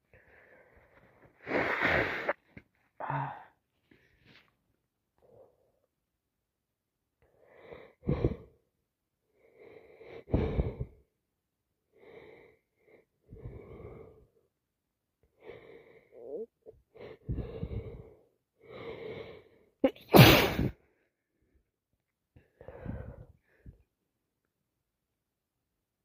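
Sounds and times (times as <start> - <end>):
woman sneezing: 19.9 - 20.7
gasping breaths: 22.4 - 23.8.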